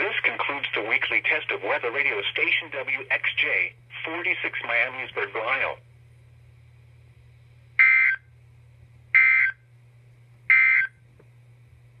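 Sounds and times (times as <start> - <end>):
faint steady hum: 0.0 - 12.0
two-tone data screech: 7.8 - 8.2, 9.2 - 9.6, 10.5 - 10.9.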